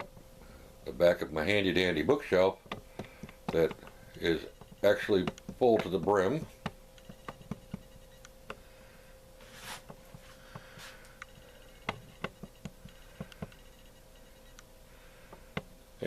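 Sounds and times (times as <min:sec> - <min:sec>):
steady hum: 0:00.0 - 0:16.0
faint clicks and taps: 0:02.6 - 0:08.6, 0:09.8 - 0:13.7, 0:15.3 - 0:15.7
soft rustles: 0:09.4 - 0:11.2.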